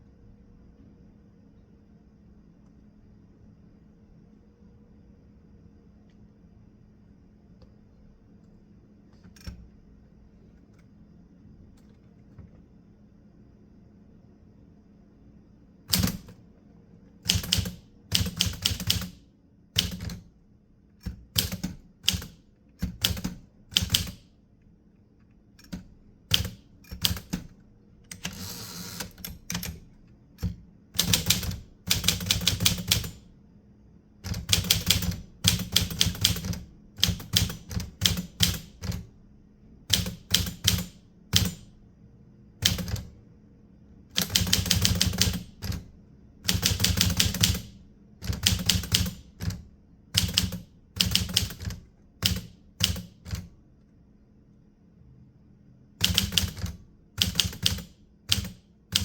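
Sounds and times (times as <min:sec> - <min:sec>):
typewriter keystrokes: 0:15.9 - 0:16.4, 0:17.3 - 0:19.2, 0:19.8 - 0:20.3, 0:21.0 - 0:24.3, 0:25.6 - 0:33.2, 0:34.2 - 0:39.1, 0:39.9 - 0:41.7, 0:42.6 - 0:43.1, 0:44.2 - 0:49.6, 0:50.2 - 0:53.5, 0:56.0 - 0:59.0.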